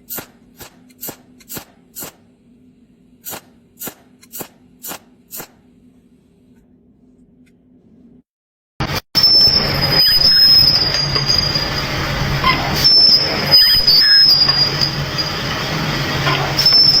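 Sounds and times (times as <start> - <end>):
metal lathe squealing: 9.2 - 17.0
low machine hum: 9.5 - 17.0.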